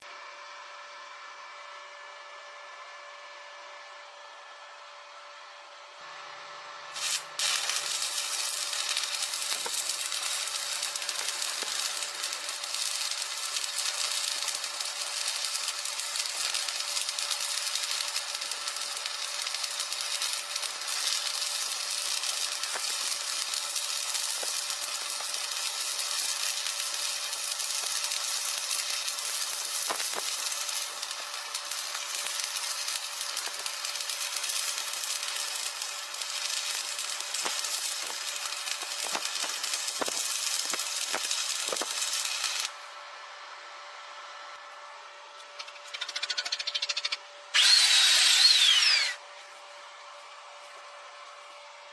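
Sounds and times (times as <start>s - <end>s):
welding arc sizzling: 6.9s - 43.0s, 45.4s - 49.2s.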